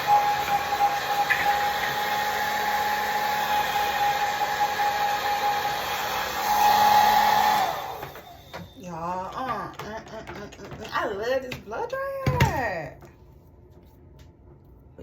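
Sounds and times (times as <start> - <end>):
hair dryer running: 0.0 - 10.8.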